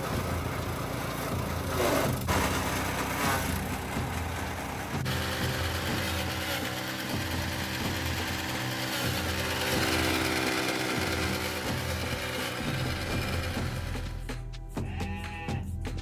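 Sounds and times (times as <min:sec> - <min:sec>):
chaff cutter running: 0:00.0 - 0:14.3.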